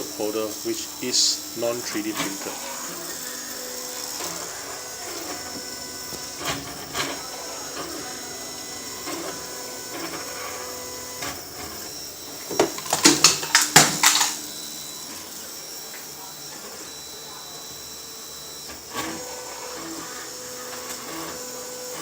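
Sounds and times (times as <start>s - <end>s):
printer stepper motors whining: 0.0s - 22.0s
sharp clicks and knocks: 12.5s - 14.4s.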